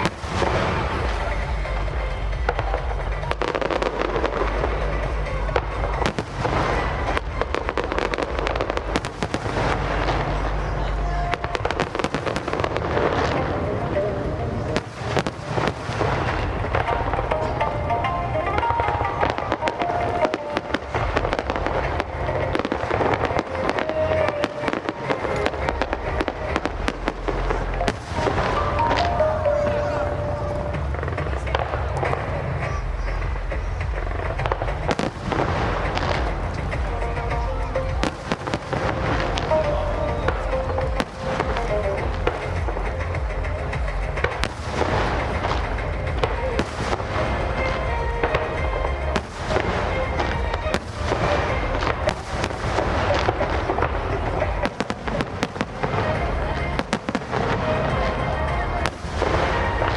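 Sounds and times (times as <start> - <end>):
fireworks pops and bangs: 0.0 - 59.9
low rumble: 25.5 - 59.9.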